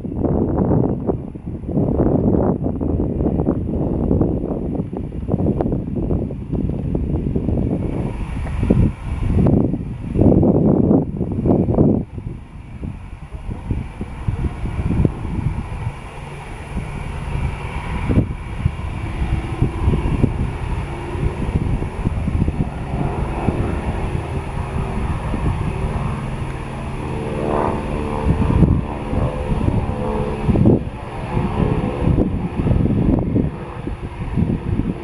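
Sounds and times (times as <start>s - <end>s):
propeller plane engines droning: 0.0s - 35.0s.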